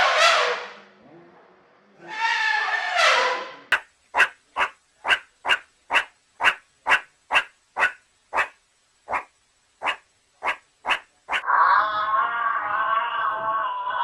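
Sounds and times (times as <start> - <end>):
dog barking: 4.2 - 11.4.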